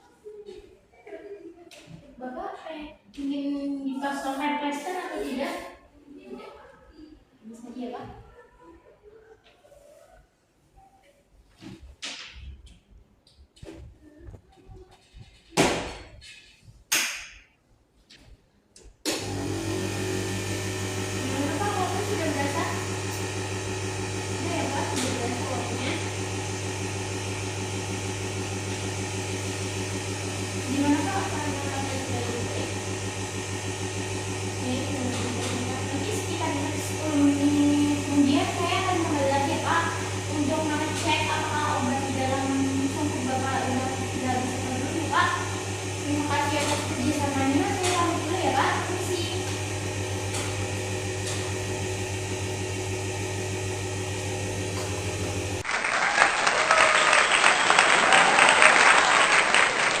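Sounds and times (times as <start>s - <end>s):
nebulizer humming: 19.1s - 55.7s
crowd applauding: 55.6s - 60.0s.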